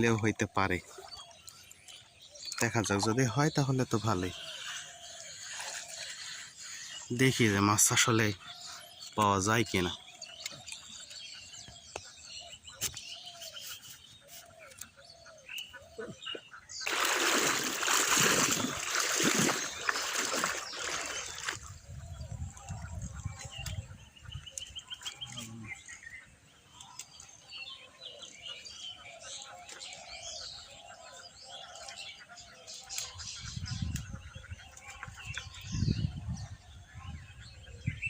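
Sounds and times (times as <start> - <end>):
small birds chirping: 0.0 - 38.0
water splashing loudly: 16.8 - 21.6.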